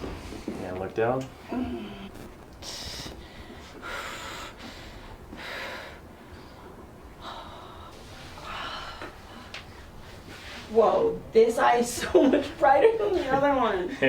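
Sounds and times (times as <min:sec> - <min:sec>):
person breathing: 0:01.7 - 0:10.4.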